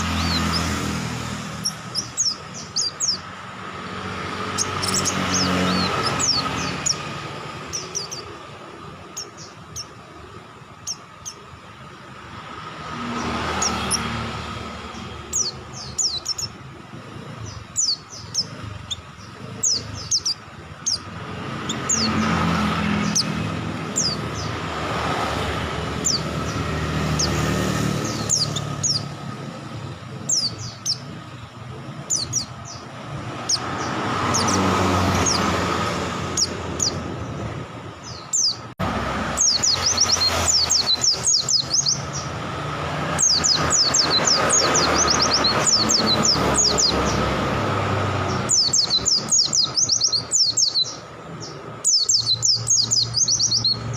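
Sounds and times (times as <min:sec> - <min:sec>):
birds chirping rapidly: 0:00.0 - 0:53.9
vehicles passing: 0:00.0 - 0:53.9.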